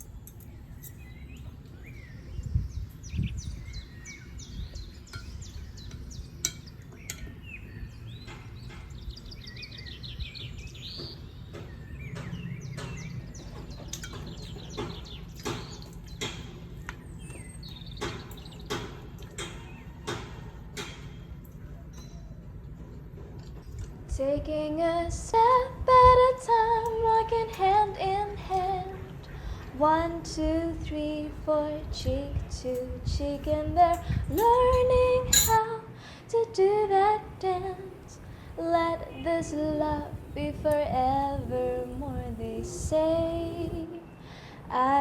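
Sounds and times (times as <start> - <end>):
bird trill: 0.0 - 18.8, 21.7 - 22.4
small birds chirping: 0.0 - 20.5, 21.2 - 22.8, 37.6 - 44.5
sharp clicks and knocks: 11.0 - 17.4, 18.0 - 22.1.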